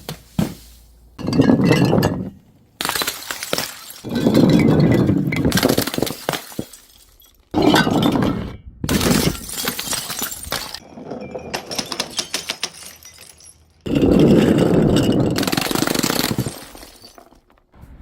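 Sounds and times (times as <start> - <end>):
glass bottles smashing: 1.2 - 17.7
glass shards tinkling: 3.0 - 8.2, 9.2 - 17.4.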